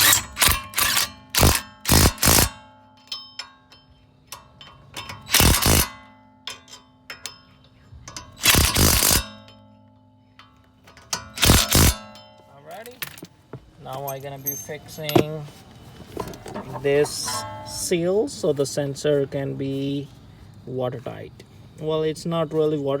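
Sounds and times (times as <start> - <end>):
power driver running: 0.0 - 2.5, 5.4 - 5.9, 8.4 - 9.2, 11.4 - 12.0.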